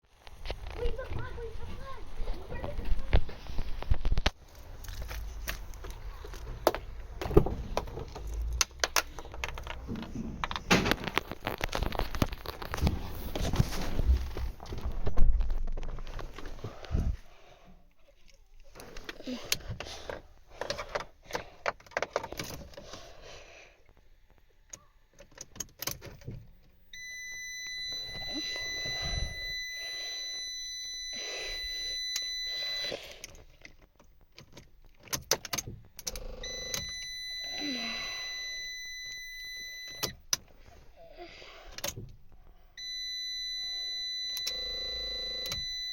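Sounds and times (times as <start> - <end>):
car electronic warning tone: 26.9 - 33.0, 36.2 - 40.2, 42.8 - 45.9.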